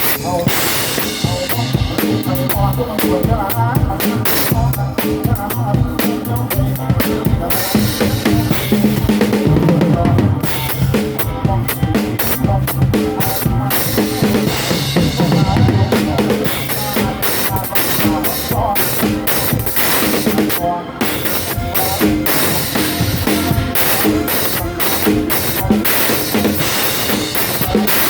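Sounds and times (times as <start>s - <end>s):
drum kit playing: 0.0s - 28.0s
low bass line: 1.3s - 19.0s.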